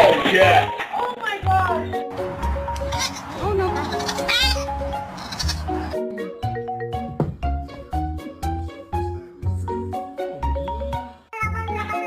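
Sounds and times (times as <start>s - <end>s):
bouncy tune over bass beat: 4.6s - 8.8s, 9.5s - 12.0s.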